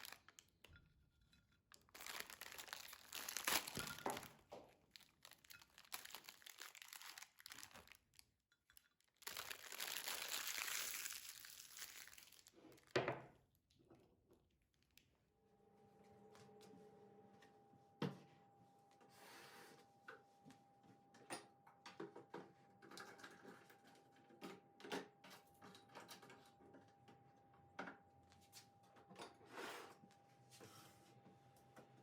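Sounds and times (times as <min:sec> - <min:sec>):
rustling: 0:01.9 - 0:04.3.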